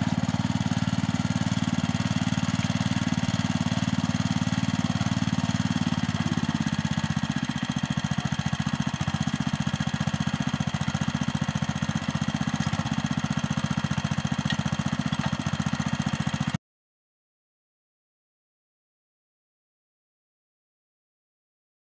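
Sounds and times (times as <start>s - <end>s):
tractor engine running: 0.0s - 16.6s.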